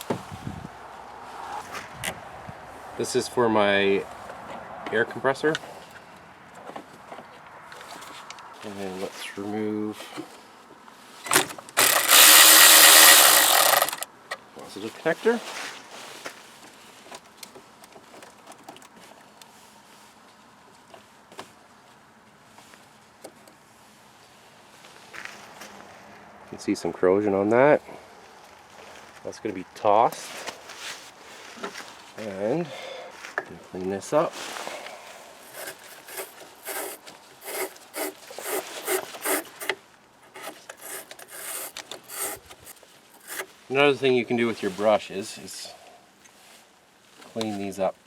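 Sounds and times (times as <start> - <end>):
metal parts and hand tools clicking: 11.3 - 14.0, 35.4 - 43.5
wire brush scrubbing metal: 11.8 - 14.0, 35.4 - 43.5.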